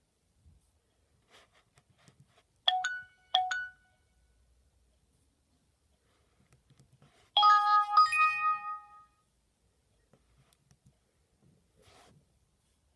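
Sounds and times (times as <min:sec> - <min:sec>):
two-note phone chime: 0:02.7 - 0:04.0, 0:07.4 - 0:09.2.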